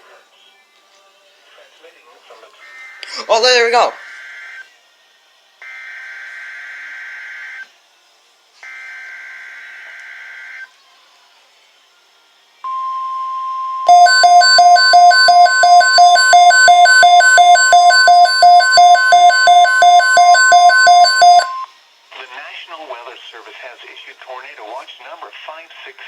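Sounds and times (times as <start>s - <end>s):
data screech bursts: 12.7s - 21.7s
rapid electronic alarm beeping: 12.7s - 21.7s
steady warning alarm tone: 12.7s - 21.7s.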